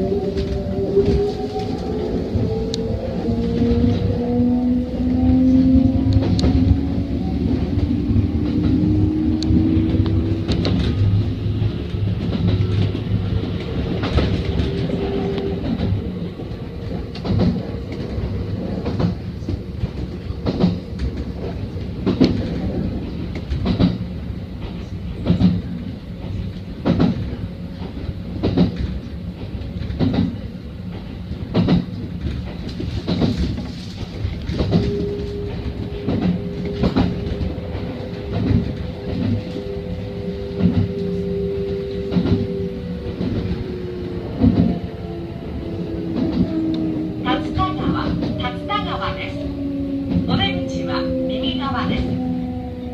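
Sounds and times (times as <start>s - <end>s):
train rumble: 0.0s - 52.9s
train wheels clacking over rail joints: 7.8s - 44.8s.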